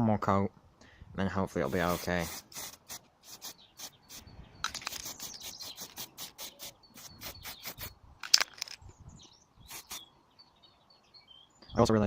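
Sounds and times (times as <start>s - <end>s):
spray can mixing ball rattling: 4.7s - 8.8s.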